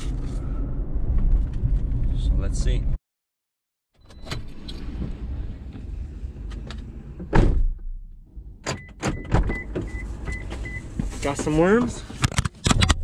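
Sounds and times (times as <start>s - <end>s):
car engine rumbling: 0.0s - 3.0s, 4.1s - 13.0s
car warning chime beeping: 8.8s - 10.9s.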